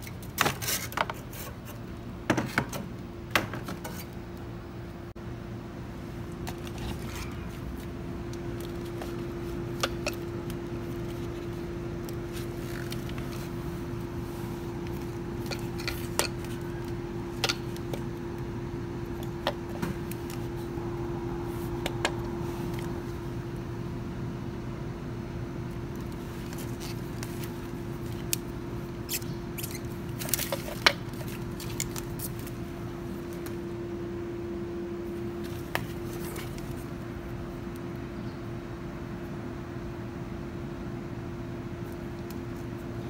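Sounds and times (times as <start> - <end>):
steady hum: 0.0 - 43.0.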